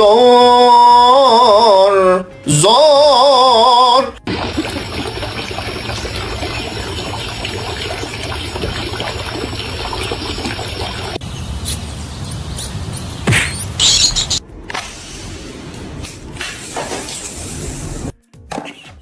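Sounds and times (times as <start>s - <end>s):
trickling water-like noise: 4.3s - 11.2s.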